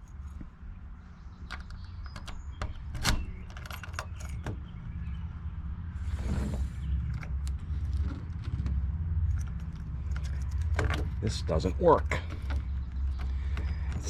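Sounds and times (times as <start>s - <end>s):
key clicking in lock: 1.4s - 4.7s
door lock scraping: 1.4s - 5.2s
keys jangling: 1.5s - 5.2s, 7.1s - 14.0s.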